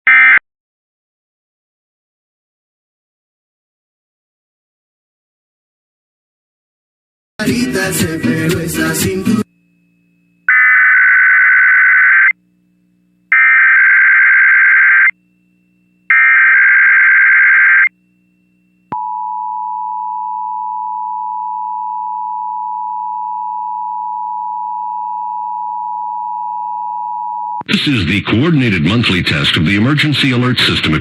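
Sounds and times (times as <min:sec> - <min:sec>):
modem-like digital warble: 0:10.5 - 0:12.4, 0:13.3 - 0:15.2, 0:16.1 - 0:17.9.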